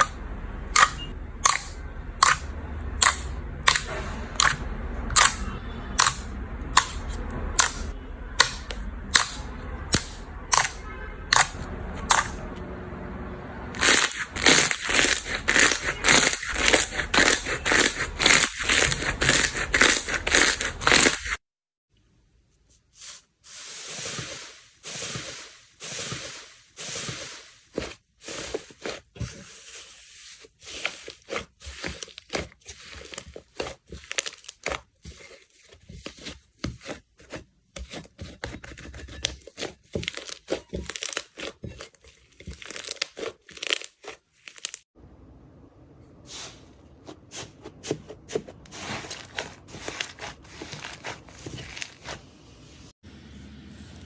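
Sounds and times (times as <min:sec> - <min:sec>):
slime crackling and popping: 0:30.7 - 0:34.9, 0:39.9 - 0:41.8, 0:42.4 - 0:44.8.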